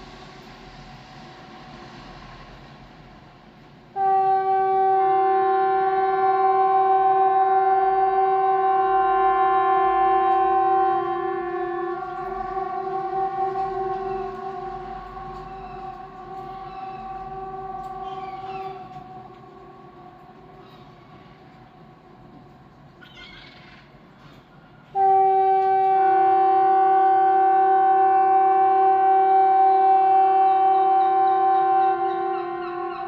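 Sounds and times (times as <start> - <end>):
warning siren steady tone: 4.0 - 21.5, 25.0 - 33.0
second siren tone: 8.8 - 21.6.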